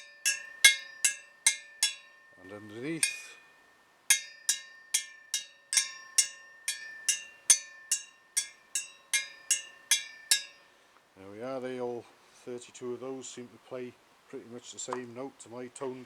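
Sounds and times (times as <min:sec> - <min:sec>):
wheel spokes tapped ringing: 0:00.0 - 0:10.8.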